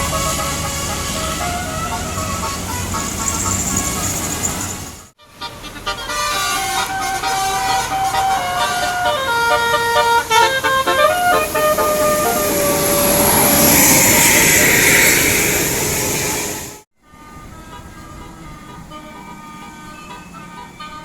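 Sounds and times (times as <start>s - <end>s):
loud rushing noise: 0.0s - 5.1s, 11.0s - 16.9s
musical air horn tune: 0.0s - 21.0s.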